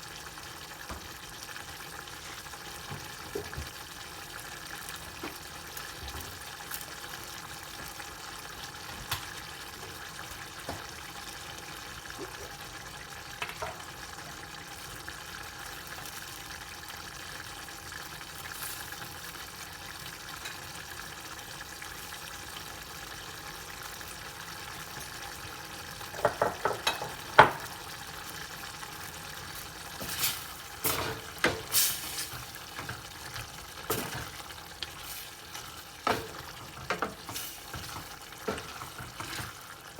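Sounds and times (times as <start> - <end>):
food sizzling in a pan: 0.0 - 39.9
utensil clattering against pan: 26.1 - 27.8, 30.0 - 39.6.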